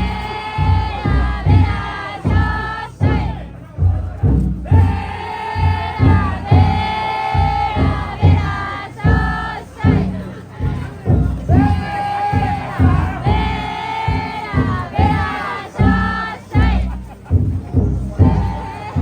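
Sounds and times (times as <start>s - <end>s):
big drum beating: 0.0s - 19.0s
crowd chanting and shouting: 0.0s - 19.0s.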